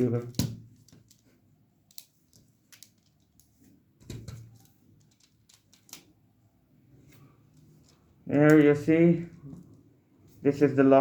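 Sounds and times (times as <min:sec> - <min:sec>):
plastic toy bricks clicking: 0:01.8 - 0:03.5, 0:04.2 - 0:06.1.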